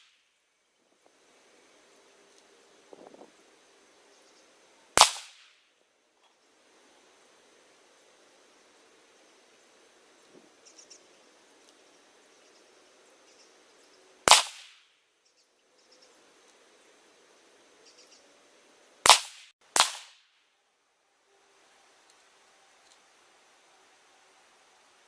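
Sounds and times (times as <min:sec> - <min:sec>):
rifle shots: 0:05.0 - 0:05.6, 0:14.3 - 0:14.8, 0:19.0 - 0:20.2.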